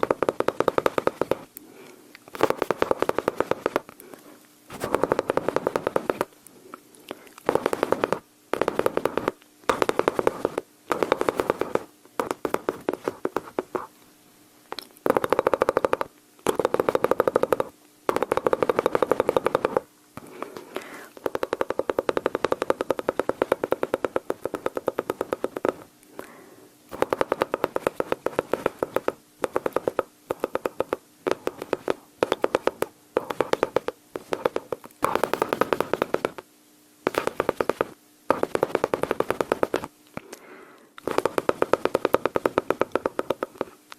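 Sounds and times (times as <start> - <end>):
mouth imitating gunfire: 4.7 - 6.2.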